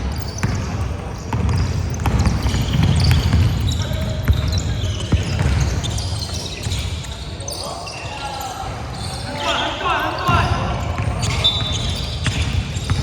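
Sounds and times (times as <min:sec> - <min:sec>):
basketball bouncing on court: 0:00.0 - 0:07.3, 0:10.2 - 0:13.0
players' voices: 0:00.0 - 0:13.0.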